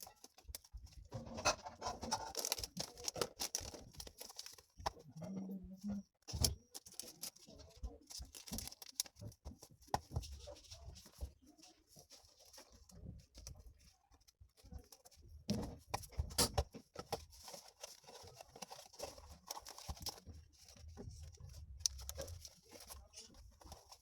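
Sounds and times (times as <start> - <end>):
sticker packaging rustling: 0.0 - 5.1, 6.3 - 24.0
packaging crinkling: 2.1 - 4.8, 8.1 - 9.2.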